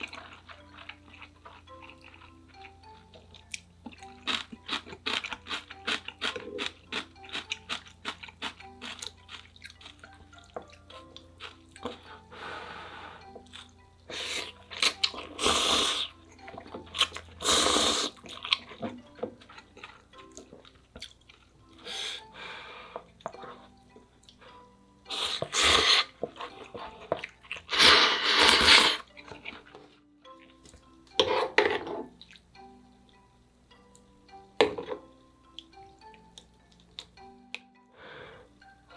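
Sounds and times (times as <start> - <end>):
noodles slurped: 4.0 - 10.2, 13.2 - 16.2, 16.9 - 18.9, 25.1 - 29.7.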